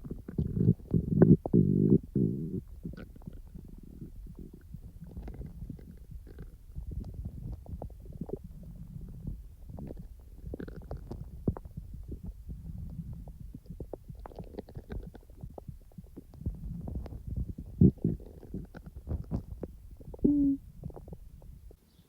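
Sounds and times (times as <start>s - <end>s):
stomach rumbling and gurgling: 0.0s - 21.8s.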